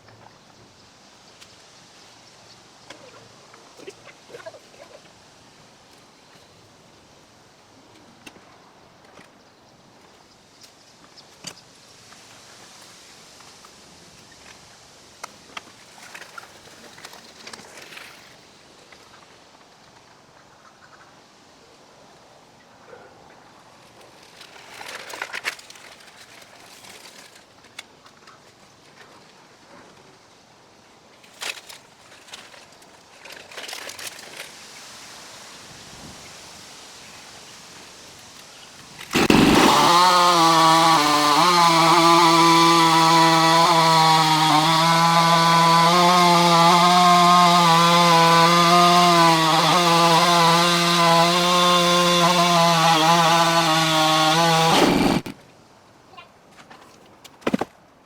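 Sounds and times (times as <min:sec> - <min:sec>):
chainsaw at full throttle: 0:39.1 - 0:55.4.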